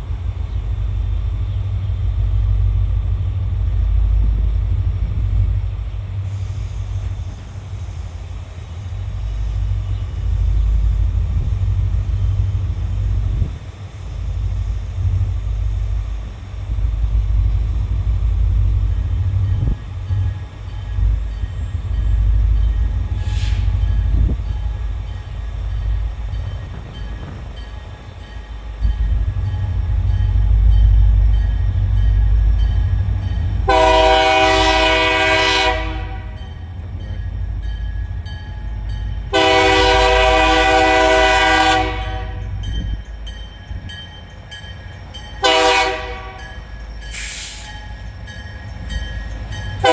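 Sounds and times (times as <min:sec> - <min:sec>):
diesel locomotive rumble: 0:00.0 - 0:49.9
locomotive air horn blasts: 0:33.6 - 0:36.5, 0:39.3 - 0:42.6, 0:45.4 - 0:46.5.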